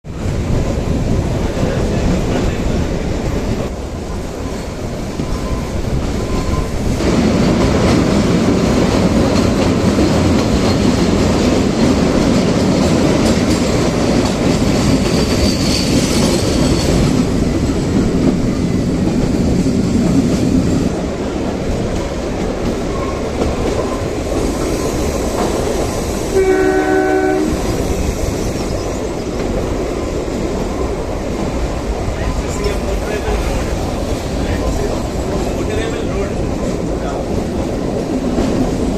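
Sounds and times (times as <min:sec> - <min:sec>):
train wheels clattering on track: 0:00.0 - 0:38.9
train horn: 0:26.3 - 0:27.8.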